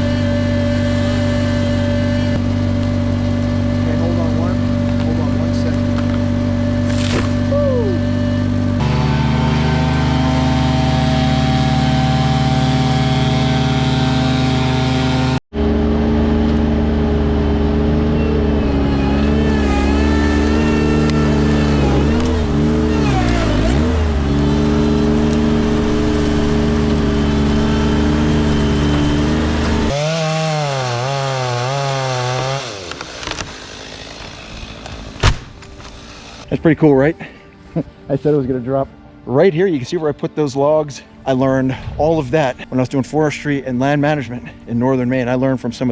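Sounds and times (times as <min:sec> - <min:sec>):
chainsaw running: 0:00.0 - 0:36.5.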